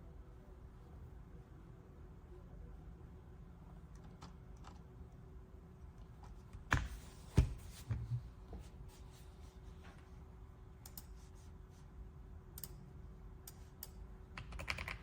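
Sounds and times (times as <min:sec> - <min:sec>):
keyboard keys clicking: 0:14.4 - 0:15.0.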